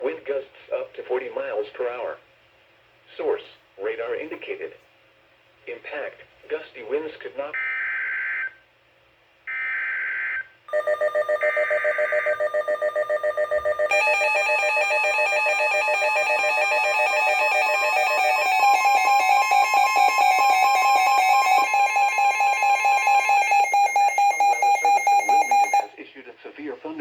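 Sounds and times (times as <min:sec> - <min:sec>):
rapidly pulsing alert tone: 0:10.7 - 0:25.9
two-tone attention signal: 0:10.7 - 0:25.9.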